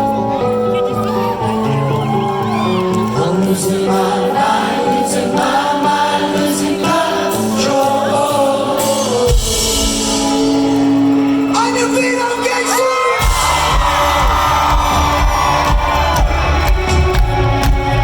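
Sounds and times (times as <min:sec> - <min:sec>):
live rock band playing: 0:00.0 - 0:18.0
person singing: 0:01.1 - 0:10.6.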